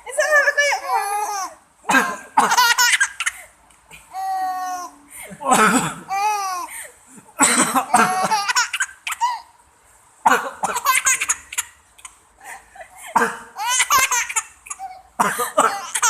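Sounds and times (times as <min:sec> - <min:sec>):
baby laughing: 0:00.7 - 0:03.5, 0:06.1 - 0:06.7, 0:07.8 - 0:09.5, 0:10.3 - 0:12.2, 0:13.2 - 0:16.0
person pretend coughing: 0:01.9 - 0:02.6, 0:05.4 - 0:06.1, 0:07.4 - 0:08.3, 0:13.1 - 0:13.5, 0:15.2 - 0:16.0.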